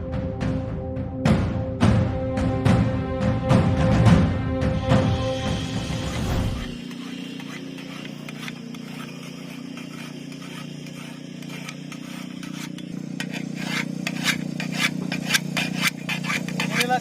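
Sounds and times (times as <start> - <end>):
file scraping mower blade: 5.2 - 17.0.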